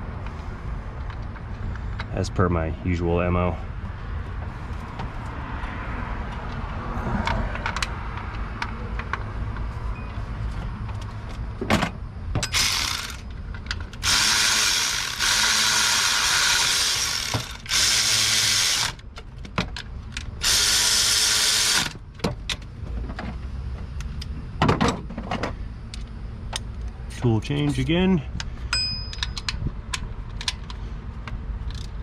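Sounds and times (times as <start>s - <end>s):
power ratchet spinning: 12.5s - 19.0s, 20.4s - 22.0s.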